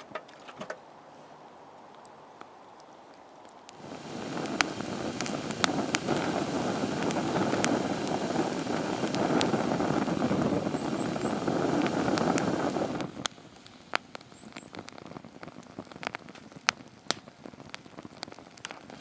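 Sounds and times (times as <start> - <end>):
campfire wood crackling: 0.0 - 19.0
steady rushing noise: 3.8 - 13.3.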